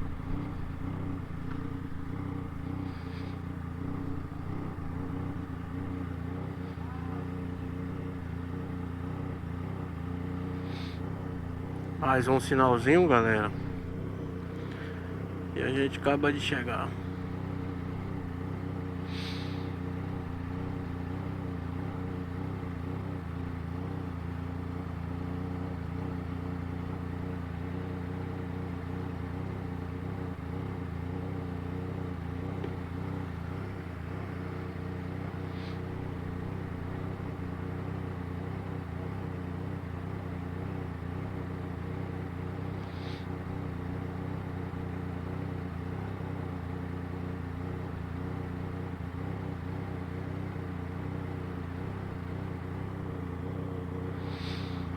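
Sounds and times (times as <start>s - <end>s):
motorcycle engine idling: 0.0s - 54.9s.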